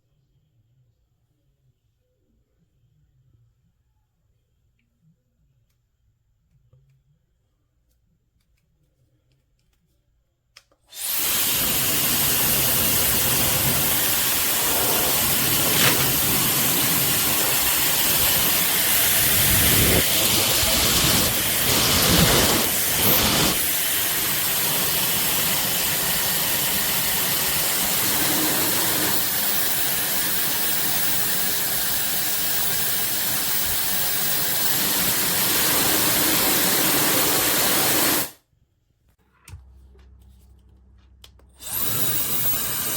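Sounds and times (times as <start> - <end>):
hair dryer blowing: 10.9 - 38.4, 41.6 - 42.9.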